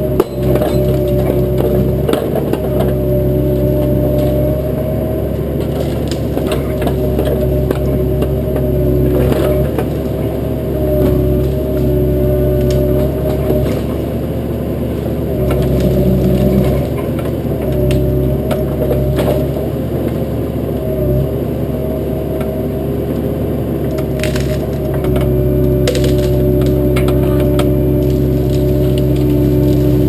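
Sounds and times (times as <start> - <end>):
excavator diesel engine running: 0.0 - 30.0
branches cracking and breaking: 14.9 - 18.2, 23.9 - 24.9, 25.8 - 26.8, 27.6 - 30.0.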